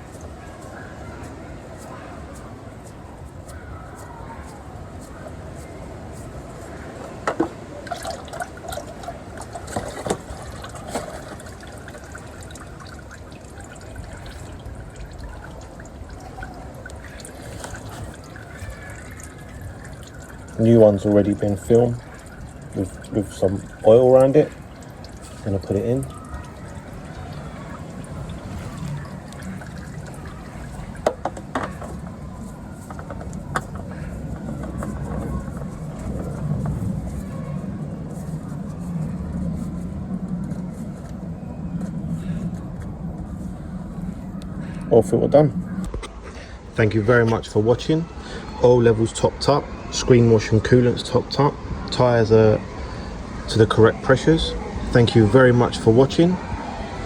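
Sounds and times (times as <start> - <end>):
oil trickling and dripping: 6.6 - 37.4.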